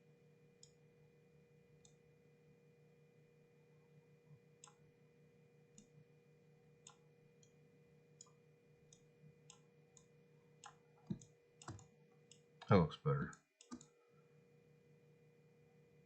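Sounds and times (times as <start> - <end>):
low electrical hum: 0.0 - 16.0
mouse and keyboard clicks: 10.6 - 12.4.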